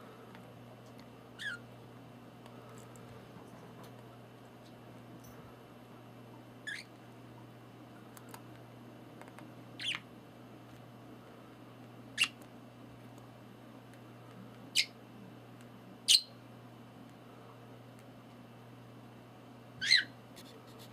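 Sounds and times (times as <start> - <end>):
budgerigar chirping: 1.4 - 1.6, 6.7 - 6.9, 9.8 - 10.0, 14.8 - 15.0, 16.1 - 16.4, 19.8 - 20.1.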